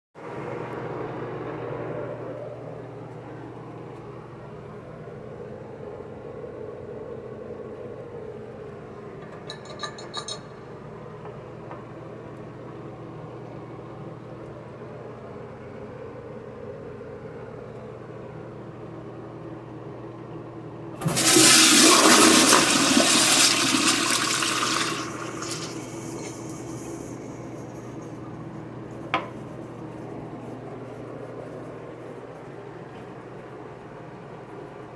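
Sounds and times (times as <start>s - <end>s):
toilet flushing: 21.0s - 28.3s.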